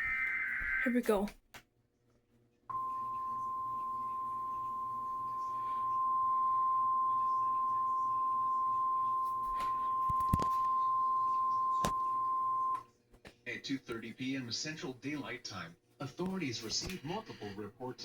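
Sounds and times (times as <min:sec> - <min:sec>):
steady high alert tone: 0:00.0 - 0:01.3, 0:02.7 - 0:12.8.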